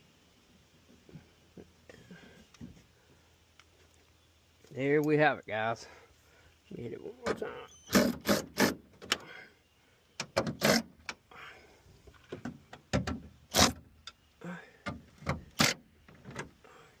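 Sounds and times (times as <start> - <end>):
sharp knocks and clicks: 12.3 - 13.3.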